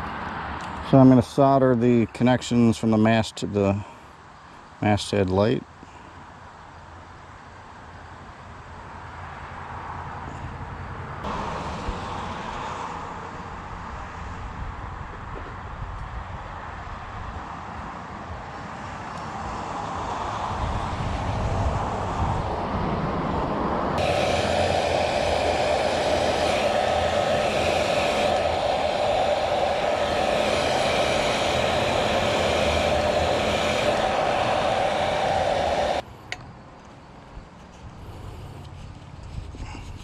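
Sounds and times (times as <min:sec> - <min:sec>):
low rumbling noise: 0:20.1 - 0:36.2
heat gun blowing: 0:24.0 - 0:36.0.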